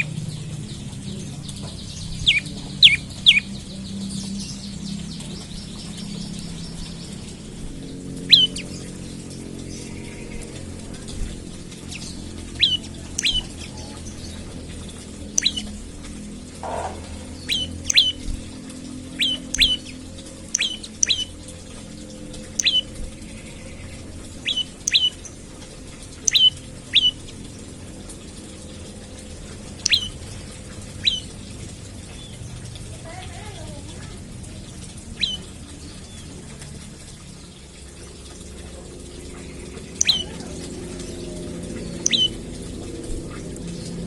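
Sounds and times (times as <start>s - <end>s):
faint low hum: 0.0s - 44.0s.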